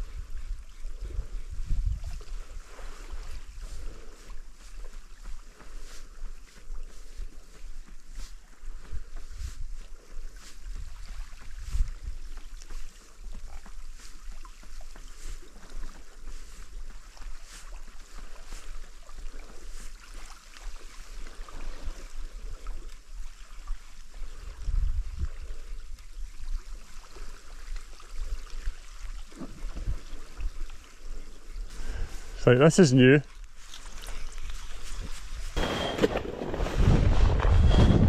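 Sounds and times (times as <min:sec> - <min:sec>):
wind buffeting microphone: 0:00.0 - 0:04.9, 0:07.1 - 0:12.5, 0:24.2 - 0:26.8, 0:34.4 - 0:38.0
sea water washing against rocks: 0:34.6 - 0:38.0.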